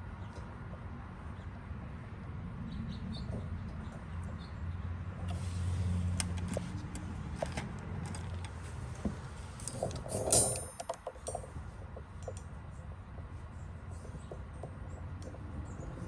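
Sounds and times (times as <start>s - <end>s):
light clicks and rattles: 6.0s - 15.5s.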